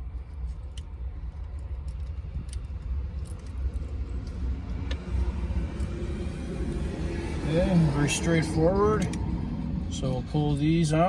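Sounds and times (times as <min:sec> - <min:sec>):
small parts and screws clicking: 0:00.0 - 0:06.0
steady low rumble: 0:00.0 - 0:11.0.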